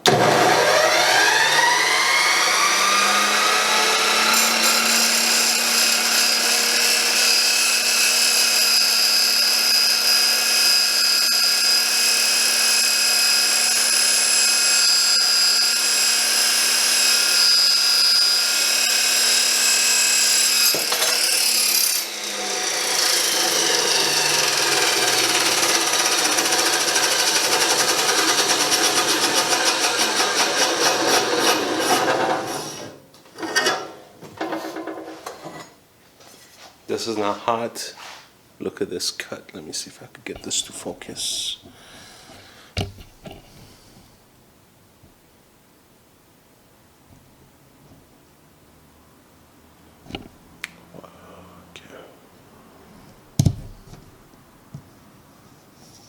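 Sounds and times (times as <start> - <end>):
chop saw whining: 0.0 - 33.0
saw blade grinding through steel: 0.1 - 33.8.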